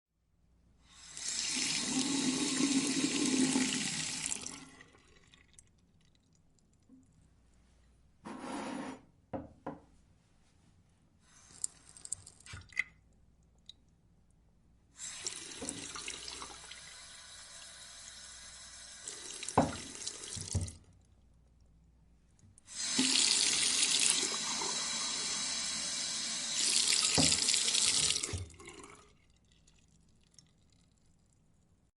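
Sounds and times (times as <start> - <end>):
water running into a glass: 1.1 - 5.7, 15.0 - 20.7, 22.7 - 30.7.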